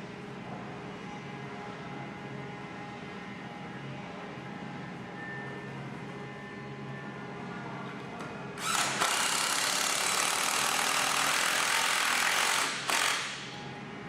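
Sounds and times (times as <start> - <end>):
power drill driving screw into log: 8.6 - 13.4.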